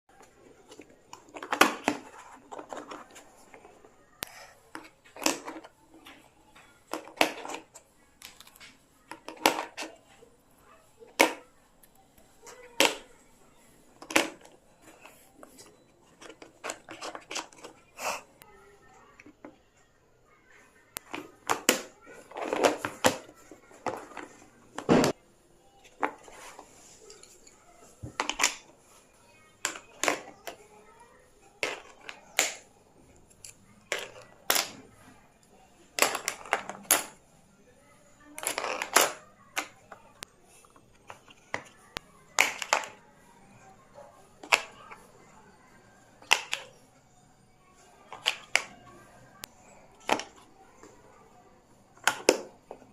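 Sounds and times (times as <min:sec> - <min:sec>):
stationery clacking into pencil box: 0:00.6 - 0:10.0, 0:14.0 - 0:18.3, 0:36.0 - 0:37.2, 0:38.4 - 0:43.0, 0:44.4 - 0:45.0, 0:46.2 - 0:46.8, 0:48.1 - 0:48.8.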